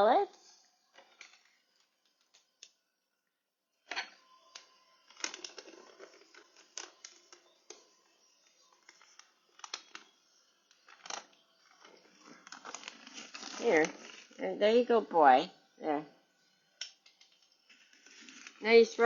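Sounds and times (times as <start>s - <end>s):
pellets rattling: 5.0s - 10.1s, 10.8s - 14.8s
plastic bag crinkling: 5.1s - 14.5s, 17.6s - 19.0s.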